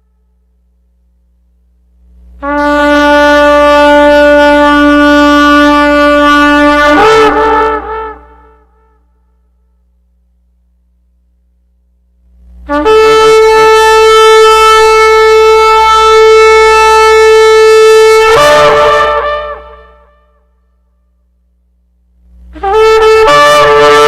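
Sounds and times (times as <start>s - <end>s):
loud horn blast: 2.4s - 9.7s, 12.6s - 20.7s, 22.5s - 24.0s.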